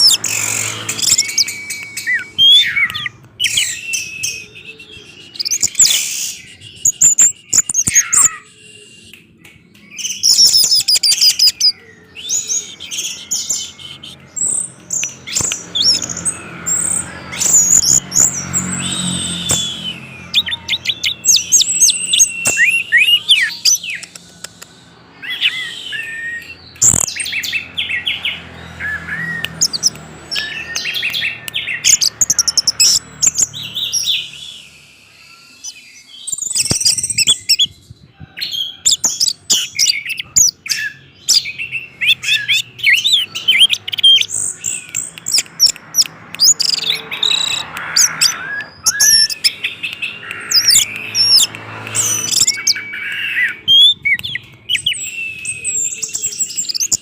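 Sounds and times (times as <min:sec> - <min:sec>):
thrush singing: 0:39.6 - 0:57.0.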